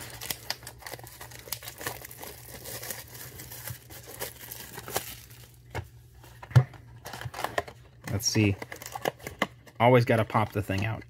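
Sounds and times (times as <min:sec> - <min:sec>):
plastic wrap tearing and crinkling: 0:00.0 - 0:05.6, 0:08.2 - 0:09.3.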